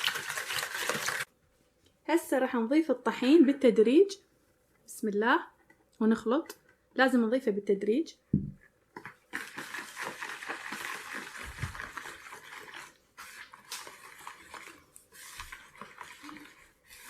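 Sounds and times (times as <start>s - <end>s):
cake batter stirring: 0.0s - 1.3s, 9.0s - 17.0s.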